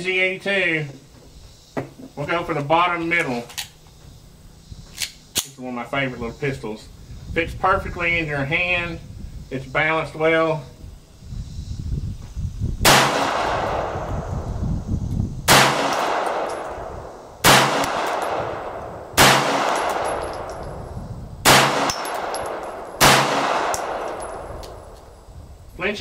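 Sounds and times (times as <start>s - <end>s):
pistol shots with echo: 12.8s - 14.0s, 15.5s - 20.6s, 21.4s - 24.6s.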